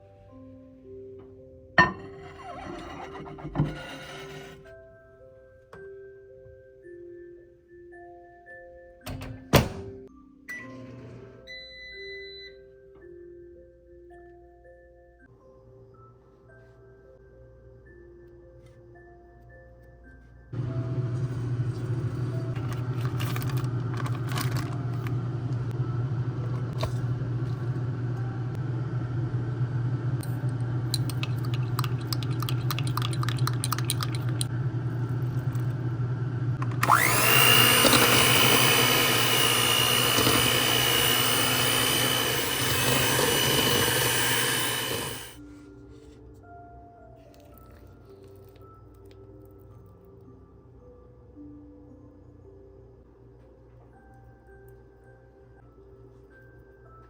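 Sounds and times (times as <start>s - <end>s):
kitchen appliance motor humming: 20.6s - 45.4s.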